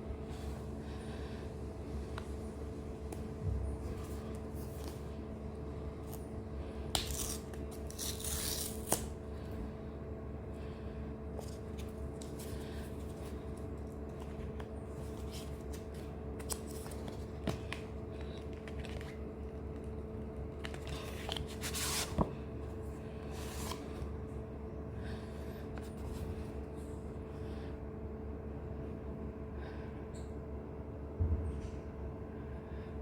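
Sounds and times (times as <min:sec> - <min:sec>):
electrical hum: 0:00.0 - 0:33.0
rustles and scrapes: 0:20.6 - 0:22.3, 0:23.2 - 0:24.1.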